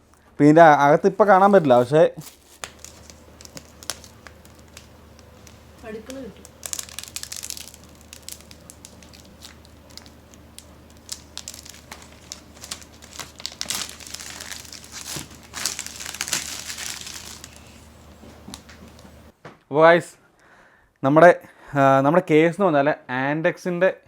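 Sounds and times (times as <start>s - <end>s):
plastic packaging crinkling: 1.1s - 19.3s.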